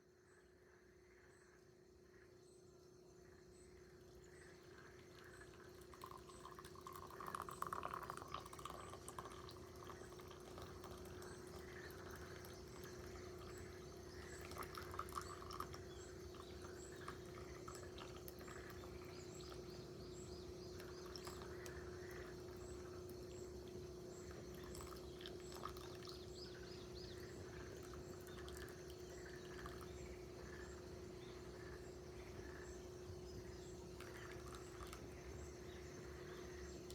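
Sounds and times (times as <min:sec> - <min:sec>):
steady low hum: 0:02.4 - 0:36.9
water being handled for tea: 0:04.5 - 0:31.0, 0:33.8 - 0:35.8.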